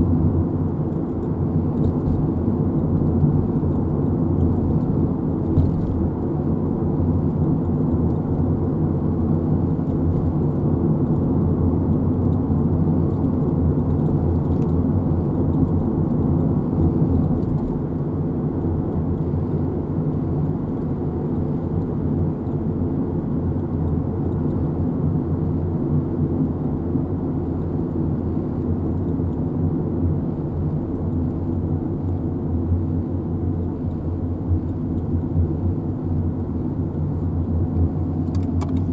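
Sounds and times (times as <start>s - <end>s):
car driving rumble: 28.5s - 38.9s.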